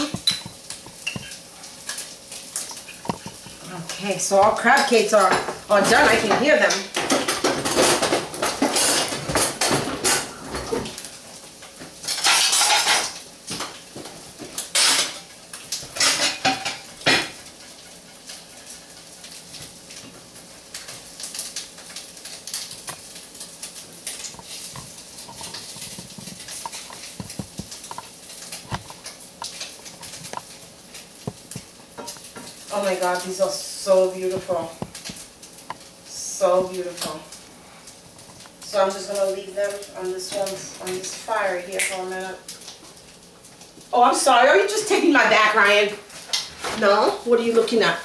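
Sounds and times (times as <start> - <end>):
utensils and pans clattering: 0.0 - 3.6, 4.3 - 11.1, 11.9 - 18.5, 24.0 - 30.6, 31.4 - 33.2.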